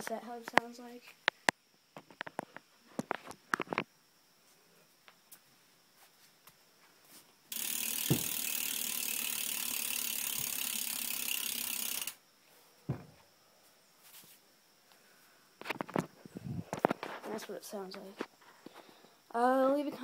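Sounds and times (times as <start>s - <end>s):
bicycle hub ratcheting buzz: 7.5s - 12.2s.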